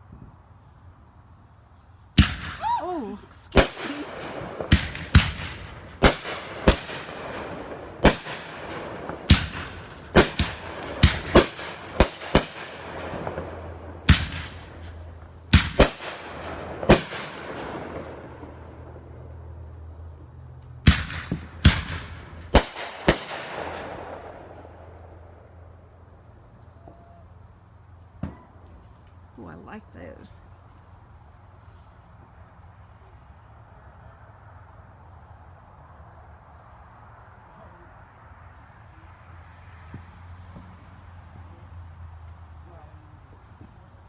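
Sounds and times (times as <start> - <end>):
fireworks bangs with echo: 2.2 - 25.5.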